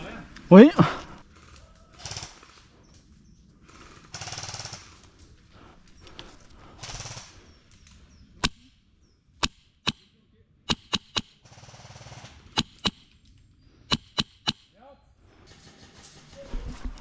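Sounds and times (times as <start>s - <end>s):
airsoft gun shots: 10.7s - 11.4s, 12.5s - 13.1s, 13.9s - 14.7s.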